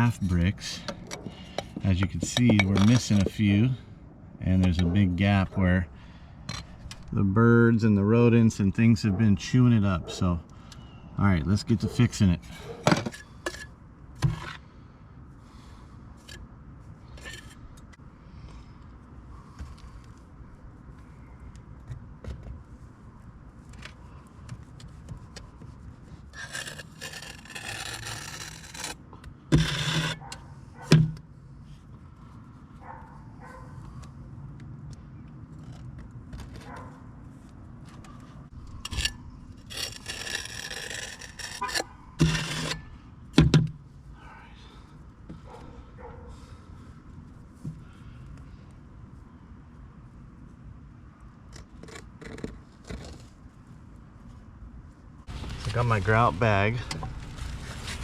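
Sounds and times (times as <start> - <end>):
scraping on brick and mortar: 0.0 - 3.4, 24.6 - 30.3, 37.8 - 43.0.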